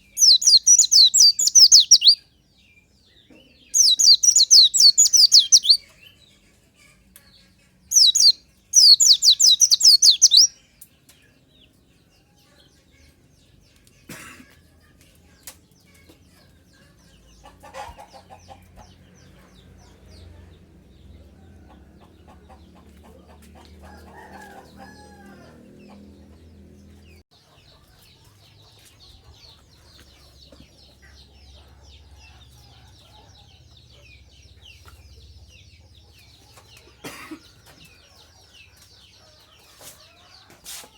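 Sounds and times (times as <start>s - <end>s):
rapid high-pitched bird chirping: 0.0s - 2.2s, 3.7s - 5.9s, 7.9s - 10.6s
chicken clucking: 0.1s - 2.2s, 3.3s - 7.0s, 7.9s - 10.5s, 15.0s - 40.9s
soft high twittering: 3.8s - 5.8s, 8.9s - 10.5s.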